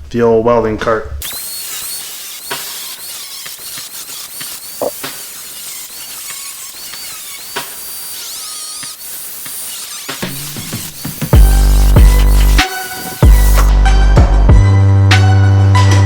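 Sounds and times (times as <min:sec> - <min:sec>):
power tool whining: 0:01.2 - 0:13.7.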